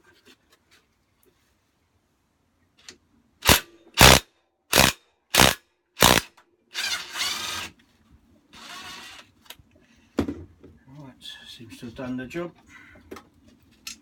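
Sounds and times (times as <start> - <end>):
power driver bursts: 3.4 - 6.3.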